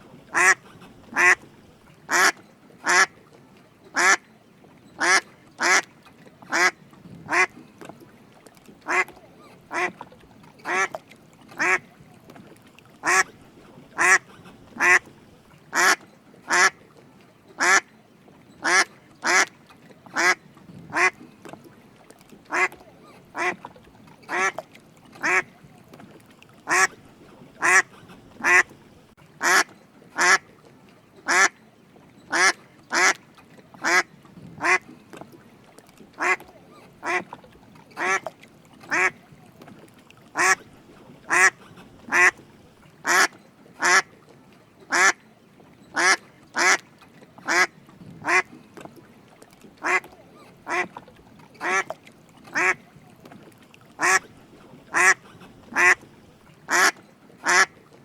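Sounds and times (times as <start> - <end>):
mallard duck quacking: 0.3 - 1.5, 2.1 - 3.1, 4.0 - 4.2, 5.0 - 5.9, 6.5 - 7.5, 8.9 - 10.0, 10.6 - 11.0, 11.6 - 11.9, 13.0 - 13.3, 14.0 - 15.1, 15.7 - 16.8, 17.6 - 17.9, 18.6 - 19.5, 20.1 - 21.2, 22.5 - 22.8, 23.4 - 23.6, 24.3 - 24.6, 25.2 - 25.5, 26.7 - 27.0, 27.6 - 28.8, 29.4 - 30.4, 31.3 - 31.6, 32.3 - 33.2, 33.8 - 34.8, 36.2 - 36.4, 37.0 - 37.3, 38.0 - 38.3, 38.9 - 39.2, 40.4 - 40.6, 41.3 - 42.4, 43.0 - 44.1, 44.9 - 45.2, 46.0 - 46.8, 47.4 - 48.5, 49.8 - 50.1, 50.7 - 51.0, 51.6 - 51.9, 52.5 - 52.8, 54.0 - 54.3, 54.9 - 56.0, 56.7 - 57.7.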